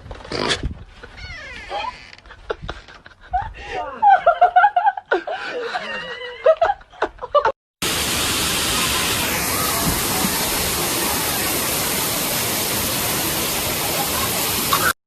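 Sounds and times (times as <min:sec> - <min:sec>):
loud steady rushing hiss: 0:07.8 - 0:15.0.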